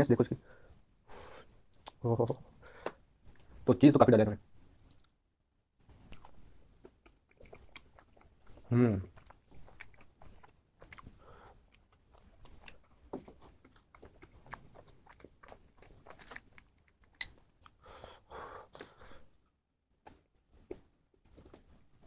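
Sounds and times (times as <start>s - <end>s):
wet chewing: 6.0s - 17.8s.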